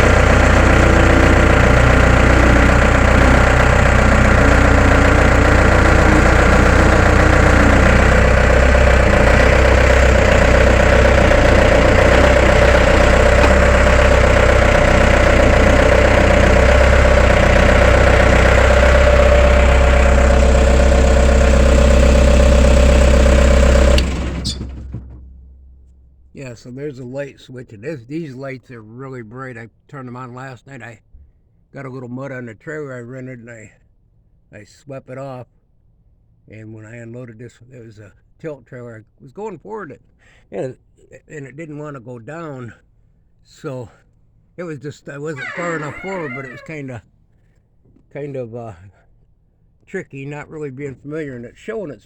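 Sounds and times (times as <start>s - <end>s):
engine running: 0.0s - 26.3s, 45.4s - 46.8s.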